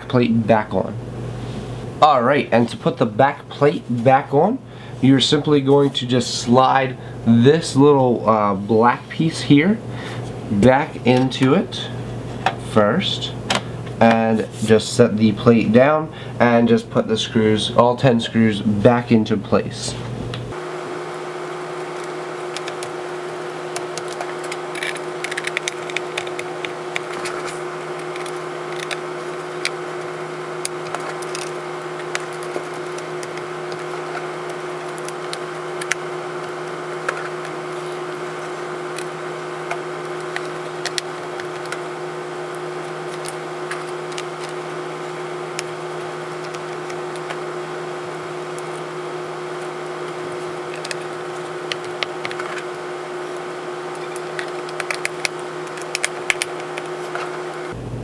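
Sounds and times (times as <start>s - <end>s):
steady multi-tone hum: 0.0s - 58.0s
screwdriver clicks and taps: 54.2s - 56.9s.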